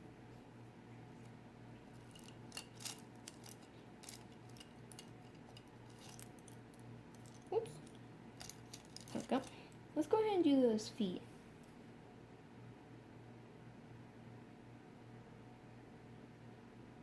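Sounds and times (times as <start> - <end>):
low steady hum: 0.0 - 17.0
clicks and clinks of painting supplies: 2.0 - 9.8.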